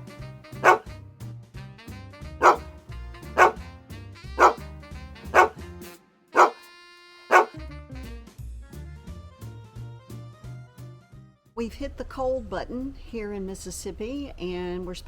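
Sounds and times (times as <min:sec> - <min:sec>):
background music: 0:00.0 - 0:12.9
dog barking: 0:00.6 - 0:00.9, 0:02.4 - 0:02.7, 0:03.3 - 0:03.6, 0:04.4 - 0:04.7, 0:05.3 - 0:05.6, 0:06.4 - 0:06.7, 0:07.3 - 0:07.6.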